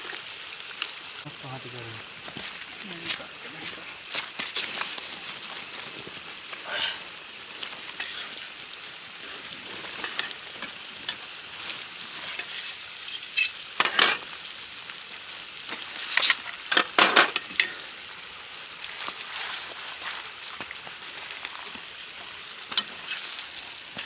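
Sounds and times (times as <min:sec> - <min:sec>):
onions sizzling in a pan: 0:00.0 - 0:24.0
spoon scraping a pan: 0:08.0 - 0:08.4, 0:12.2 - 0:14.2.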